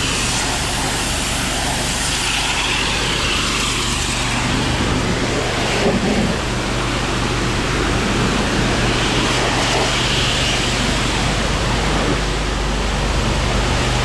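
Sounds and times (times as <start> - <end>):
pressure washer spray hissing: 0.0 - 6.5
low engine hum: 0.0 - 14.0.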